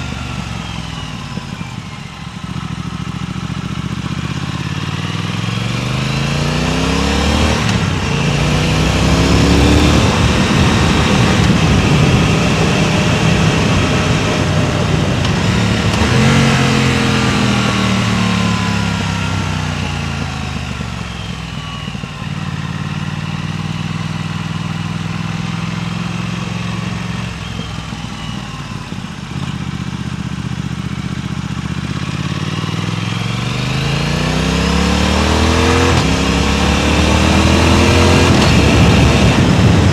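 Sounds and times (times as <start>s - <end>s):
motorcycle engine accelerating: 0.0s - 39.9s
wind on microphone: 7.7s - 18.8s, 37.2s - 39.9s.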